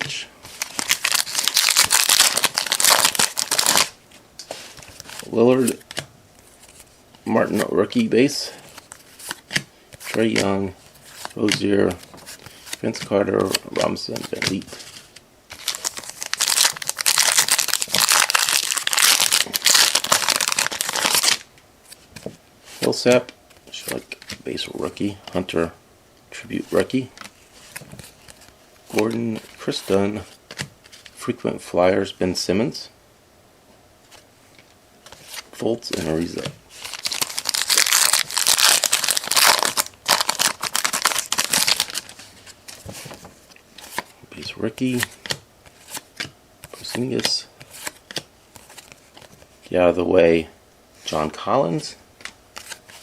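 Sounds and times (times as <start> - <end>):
plastic wrapper crinkling: 0.5 - 4.0, 15.5 - 21.5, 36.2 - 44.1.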